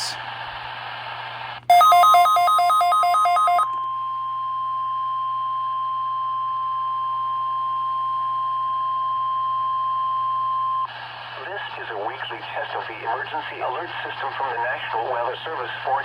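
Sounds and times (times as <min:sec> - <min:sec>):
steady alert tone: 0:01.7 - 0:03.7.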